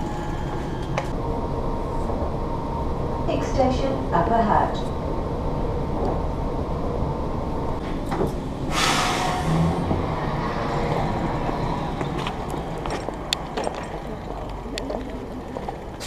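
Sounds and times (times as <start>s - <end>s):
train rumbling: 0.0s - 16.0s
loud hiss of air: 8.7s - 9.7s.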